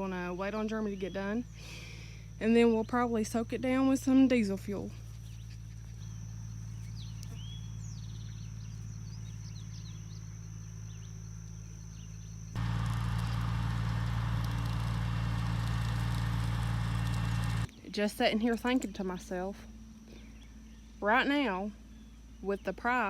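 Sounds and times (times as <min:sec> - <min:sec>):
tractor engine droning: 0:12.6 - 0:17.7.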